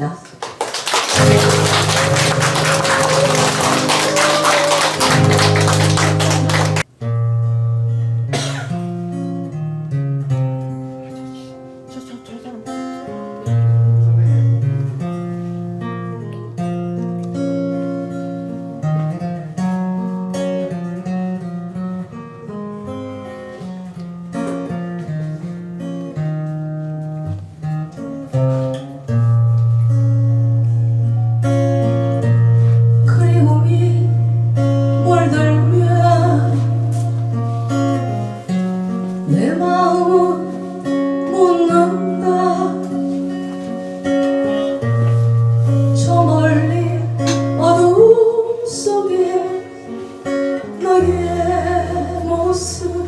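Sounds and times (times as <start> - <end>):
acoustic guitar music: 0.0 - 53.0.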